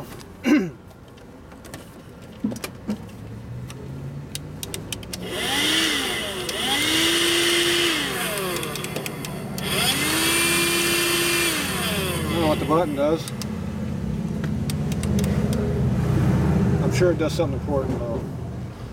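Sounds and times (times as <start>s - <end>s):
handheld vacuum cleaner whining: 5.2s - 13.4s
clicks: 8.3s - 9.8s, 14.4s - 15.6s.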